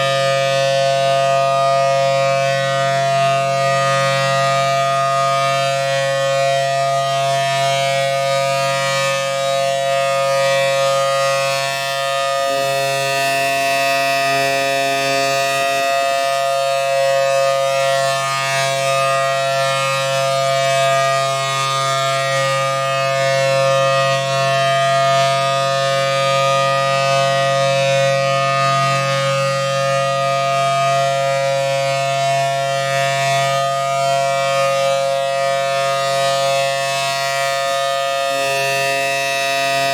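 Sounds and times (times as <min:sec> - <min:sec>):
outdoor warning siren: 0:00.0 - 0:39.9.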